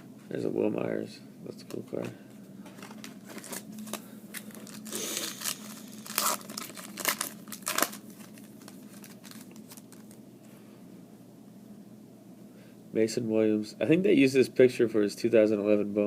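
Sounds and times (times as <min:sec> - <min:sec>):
cards rustling: 0:02.7 - 0:10.2
card pack wrapper tearing and crinkling: 0:02.8 - 0:10.2.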